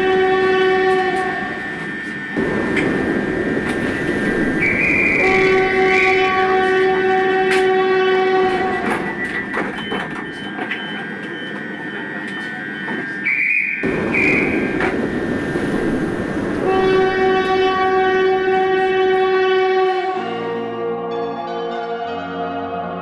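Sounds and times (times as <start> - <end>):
train horn: 0.0 - 2.5, 4.5 - 9.3, 16.5 - 20.9
train rumble and clatter: 0.0 - 20.2.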